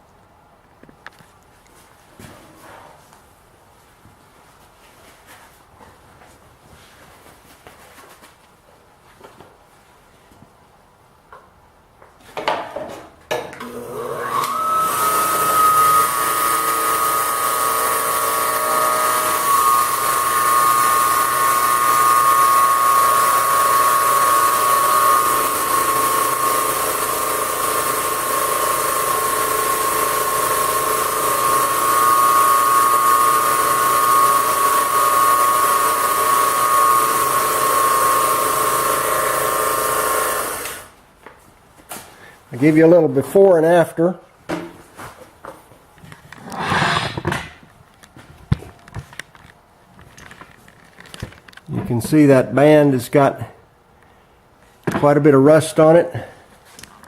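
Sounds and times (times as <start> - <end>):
electric motor whining: 13.6 - 40.9.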